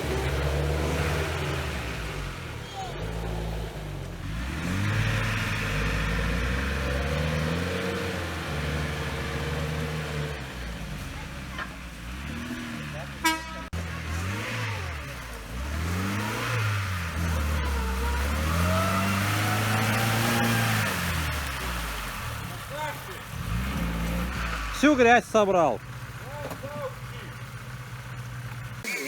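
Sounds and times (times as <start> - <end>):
off-road engine revving: 0.0 - 29.0
car horn toot: 13.2 - 13.8.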